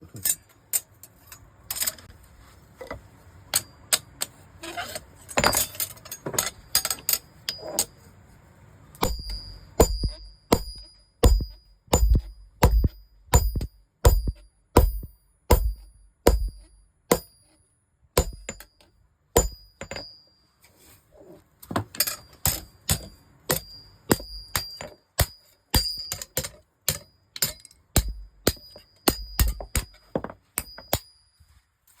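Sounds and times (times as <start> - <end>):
hammer striking blade on anvil: 9.0 - 17.6, 18.2 - 18.8, 19.4 - 20.2, 22.0 - 31.3.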